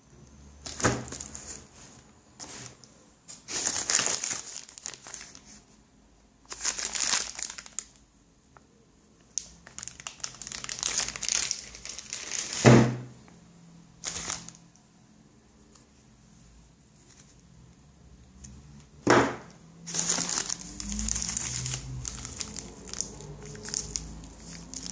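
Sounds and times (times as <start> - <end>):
packaging crinkling: 0.7 - 1.7, 2.4 - 5.6, 6.5 - 8.0, 9.4 - 13.0, 14.0 - 14.8, 19.8 - 24.9.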